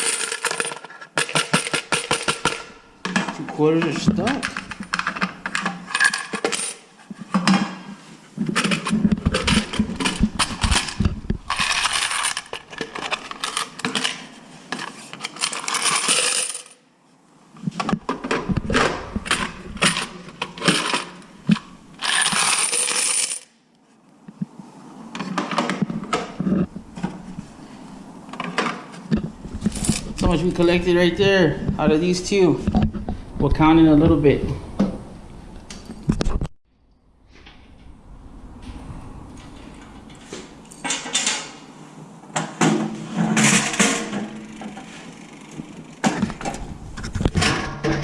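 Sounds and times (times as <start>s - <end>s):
coins pouring: 0.0s - 0.8s, 6.0s - 6.8s, 11.5s - 12.6s, 15.4s - 16.8s, 22.0s - 23.5s
coins clinking: 0.0s - 2.6s, 5.9s - 6.9s, 10.8s - 14.1s, 15.3s - 16.8s, 19.8s - 21.2s, 22.0s - 23.6s.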